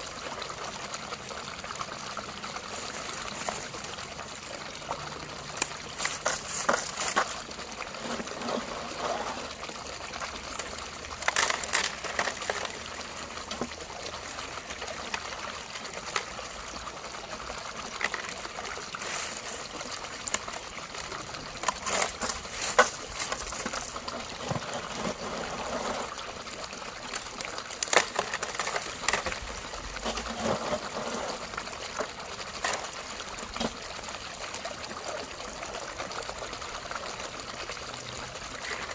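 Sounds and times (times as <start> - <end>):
creek water trickling: 0.0 - 38.9.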